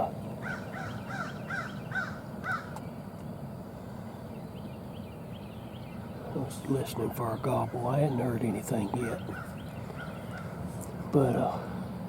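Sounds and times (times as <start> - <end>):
crow cawing: 0.4 - 2.8, 9.3 - 10.6.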